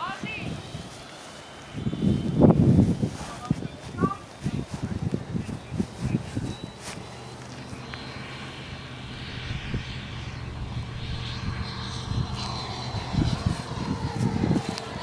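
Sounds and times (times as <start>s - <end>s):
wind buffeting microphone: 0.0s - 15.0s
model airplane engine flying past: 5.1s - 15.0s.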